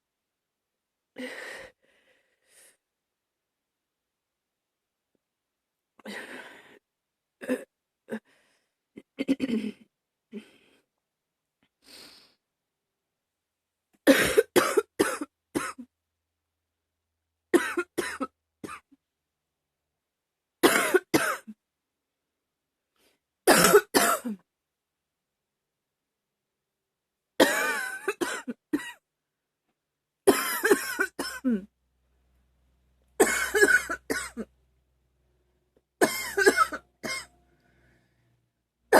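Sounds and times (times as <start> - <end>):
breaths: 1.2 - 2.9, 6.0 - 6.9, 8.2 - 8.9, 10.3 - 10.9, 11.8 - 12.4, 37.4 - 38.5
woman coughing: 9.2 - 9.8, 14.1 - 15.9, 17.6 - 18.9, 20.6 - 21.6, 23.5 - 24.4, 27.4 - 29.0, 30.3 - 31.7, 33.2 - 34.5, 36.0 - 37.3.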